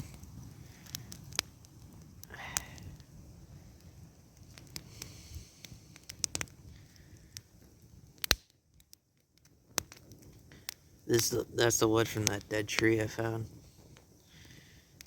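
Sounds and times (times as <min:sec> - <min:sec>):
faint low rumble: 0:00.0 - 0:08.0
wood fire crackling and popping: 0:00.0 - 0:15.0.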